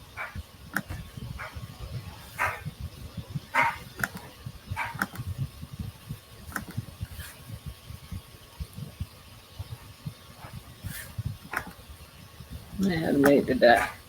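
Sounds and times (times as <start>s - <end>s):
computer mouse clicking: 0.7s - 1.0s, 4.0s - 4.3s, 4.9s - 5.3s, 6.5s - 6.8s.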